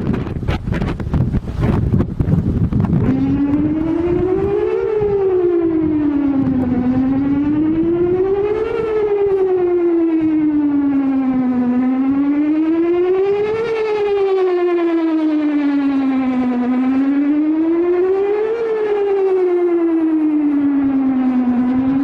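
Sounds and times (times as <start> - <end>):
warning siren slow wail: 0.0 - 22.0
wind buffeting microphone: 0.0 - 22.0.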